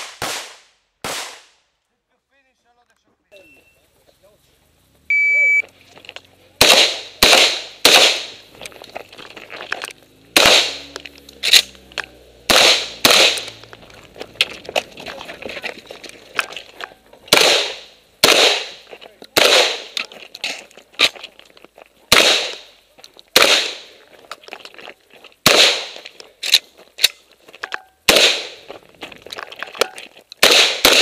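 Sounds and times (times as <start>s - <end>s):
shotgun firing: 0.0s - 1.6s, 6.6s - 8.4s, 10.4s - 10.9s, 12.5s - 13.6s, 17.3s - 20.0s, 22.1s - 22.7s, 23.4s - 24.0s, 25.4s - 26.0s, 28.1s - 28.6s, 30.4s - 31.0s
shot timer beep: 5.1s - 5.6s.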